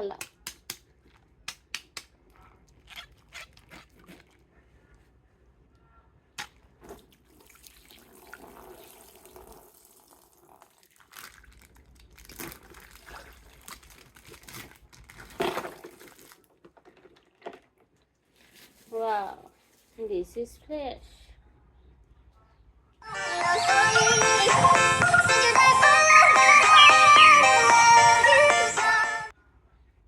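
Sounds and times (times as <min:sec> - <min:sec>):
plastic packaging rustling: 0:11.0 - 0:17.7, 0:18.3 - 0:20.0.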